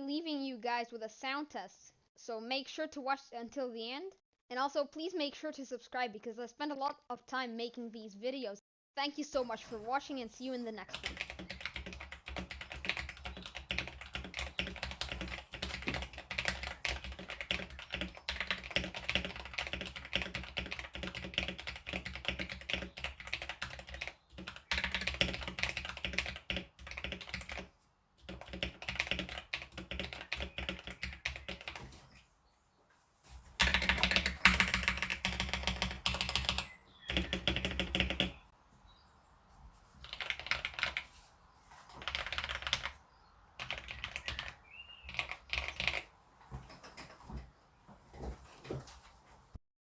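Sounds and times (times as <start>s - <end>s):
mechanical keyboard typing: 10.8s - 32.0s, 33.6s - 38.4s, 40.0s - 41.1s, 42.0s - 43.0s, 43.6s - 46.1s.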